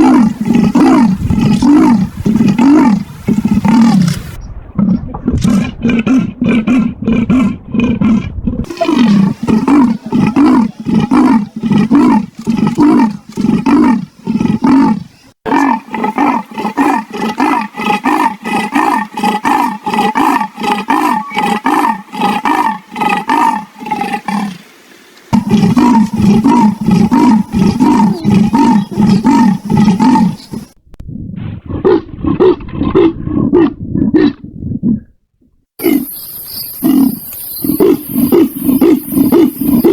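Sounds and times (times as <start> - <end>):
leopard grunting calls: 4.8 - 24.5, 25.4 - 30.7.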